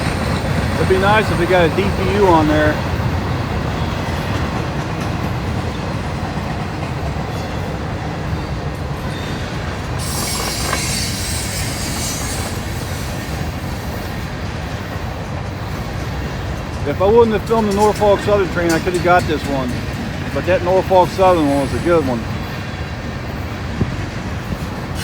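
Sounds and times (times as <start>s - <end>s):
freight train wheels rumbling: 0.0s - 25.0s.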